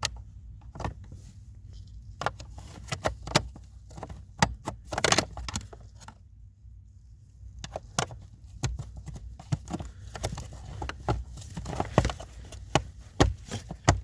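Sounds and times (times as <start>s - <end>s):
car interior parts clicking: 2.0s - 6.2s, 7.6s - 14.0s.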